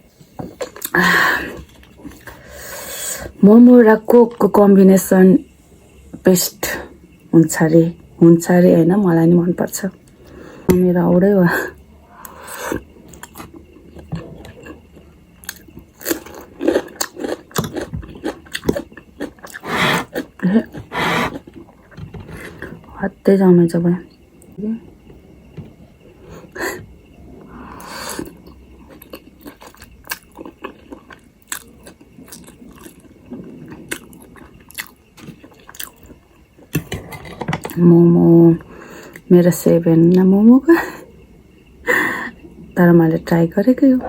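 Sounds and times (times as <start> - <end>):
person chewing food: 15.4 - 21.6, 28.9 - 33.1, 33.9 - 36.1
biting and chewing food: 15.4 - 21.7.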